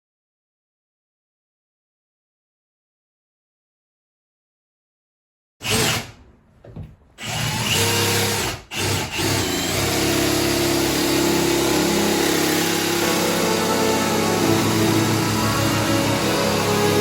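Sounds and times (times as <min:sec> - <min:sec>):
power drill whirring: 0:05.6 - 0:06.2, 0:07.2 - 0:17.0
background music: 0:11.1 - 0:17.0.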